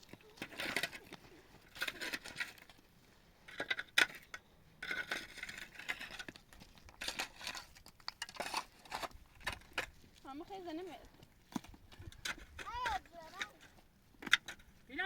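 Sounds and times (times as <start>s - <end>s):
rustling and crinkling handling: 5.2s - 15.0s.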